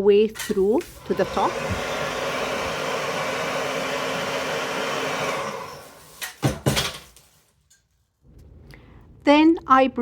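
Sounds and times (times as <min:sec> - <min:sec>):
hot air dryer blowing: 0:00.4 - 0:06.8.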